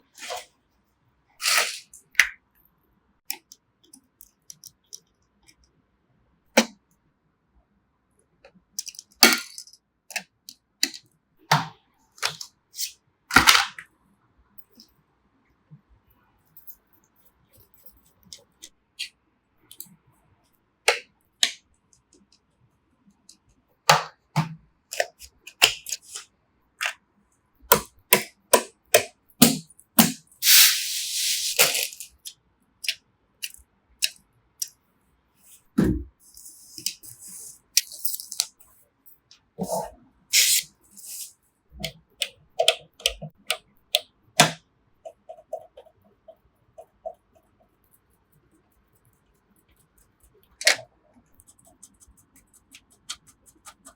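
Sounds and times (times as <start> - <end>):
hissing scrapes: 30.4 - 32.1, 39.7 - 41.3.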